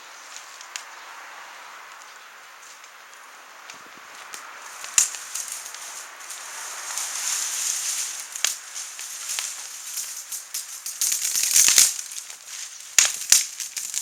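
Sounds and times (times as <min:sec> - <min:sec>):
wood fire crackling and popping: 0:02.8 - 0:14.0.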